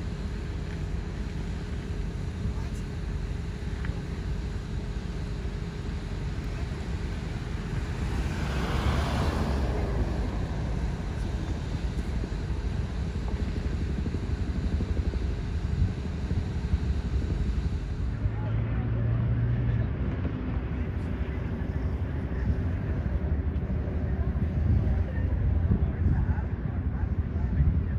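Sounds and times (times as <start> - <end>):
low traffic rumble: 0.0 - 27.9
vehicle passing by: 7.2 - 12.4.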